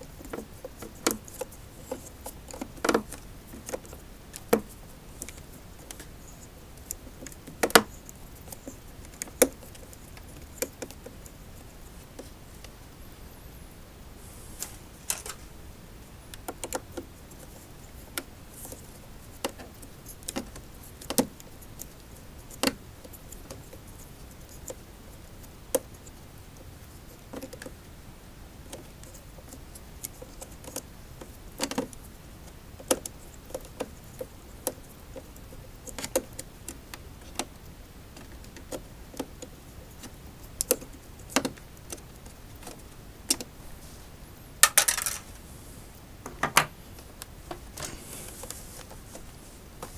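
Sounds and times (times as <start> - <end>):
metal parts and tools clinking: 44.6 - 45.3.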